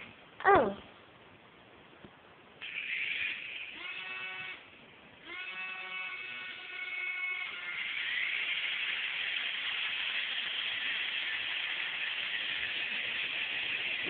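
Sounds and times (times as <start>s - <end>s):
toy helicopter rotors whirring: 2.6s - 4.6s, 5.3s - 14.0s.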